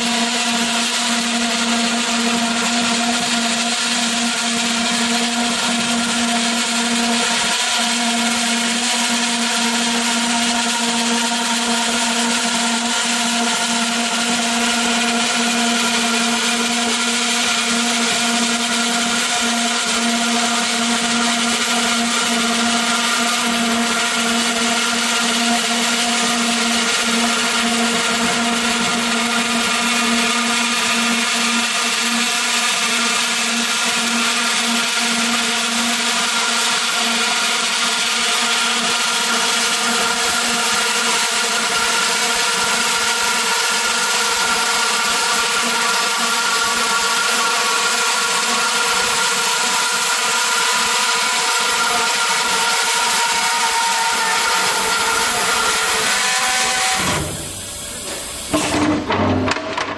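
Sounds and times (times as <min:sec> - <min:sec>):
band saw running: 0:00.0 - 0:59.9.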